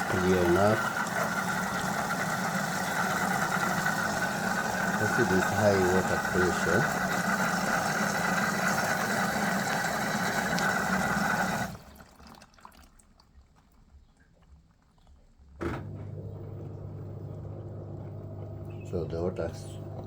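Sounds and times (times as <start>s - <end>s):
water rushing into washing machine: 0.0s - 14.8s, 15.5s - 20.0s
faint ticks and drips: 11.8s - 15.6s.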